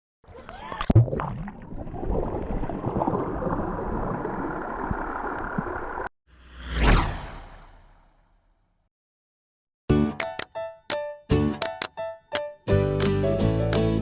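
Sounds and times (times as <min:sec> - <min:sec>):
water rushing: 0:00.4 - 0:06.1.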